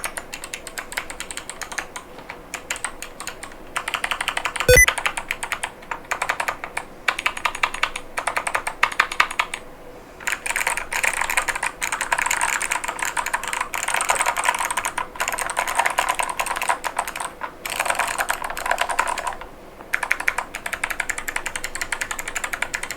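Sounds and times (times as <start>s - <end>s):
mechanical keyboard typing: 20.0s - 22.9s.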